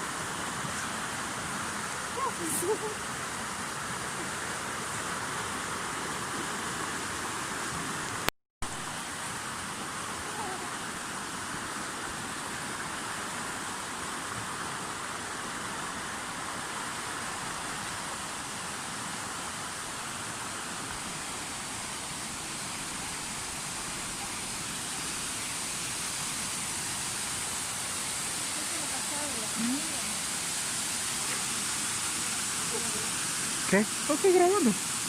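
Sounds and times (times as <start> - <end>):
waterfall rushing: 0.0 - 35.0.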